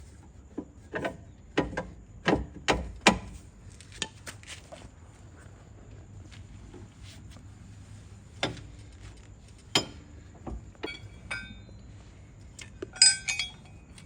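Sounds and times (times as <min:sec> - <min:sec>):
metal clinking and knocking: 0:09.7 - 0:11.8, 0:12.6 - 0:14.0.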